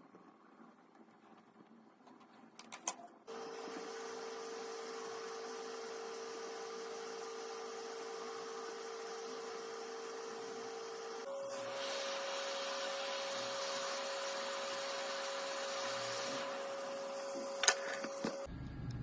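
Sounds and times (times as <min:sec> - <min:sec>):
electric machine humming: 0:03.3 - 0:19.0.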